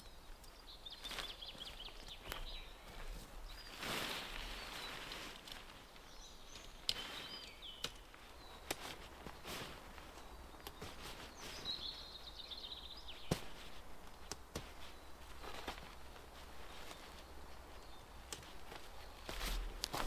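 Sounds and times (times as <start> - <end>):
tent pitching clicks and knocks: 13.1 - 20.0.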